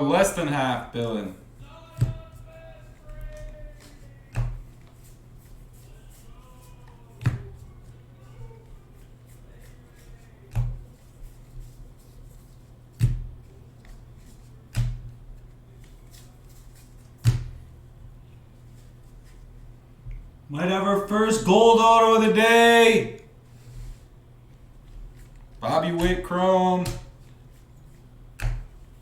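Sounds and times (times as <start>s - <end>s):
steady low hum: 0.0s - 29.0s
sharp thuds on a desk: 4.3s - 4.7s, 17.2s - 17.6s, 28.4s - 28.8s.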